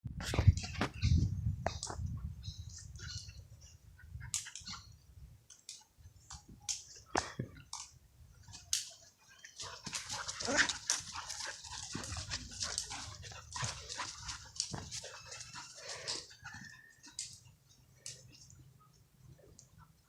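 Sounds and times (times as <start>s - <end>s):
sharp clicks and scuffling: 5.5s - 18.6s.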